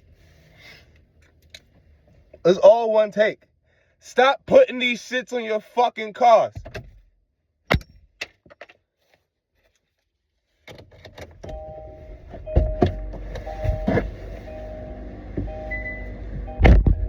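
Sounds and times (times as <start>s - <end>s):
car engine running: 11.4s - 17.0s
short repeated tones: 11.5s - 17.0s.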